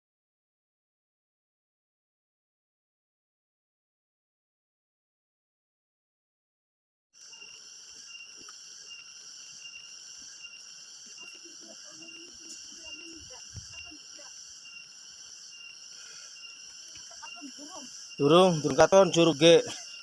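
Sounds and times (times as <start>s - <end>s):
insects buzzing: 7.2s - 20.0s.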